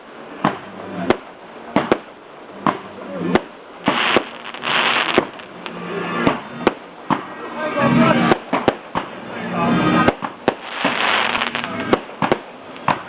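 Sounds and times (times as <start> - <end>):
fireworks bangs and crackle: 0.4 - 7.3, 8.2 - 9.2, 10.0 - 13.0.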